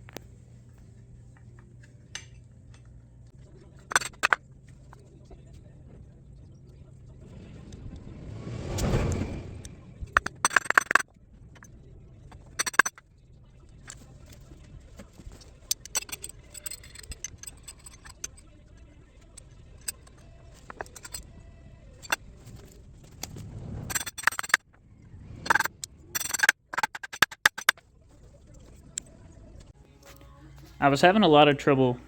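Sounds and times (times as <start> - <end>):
metal tools clinking and tapping: 1.3 - 3.0, 3.7 - 5.0, 10.2 - 11.0, 12.3 - 13.0, 13.9 - 18.5, 19.2 - 21.3, 22.0 - 22.8, 23.9 - 24.6, 25.5 - 27.8.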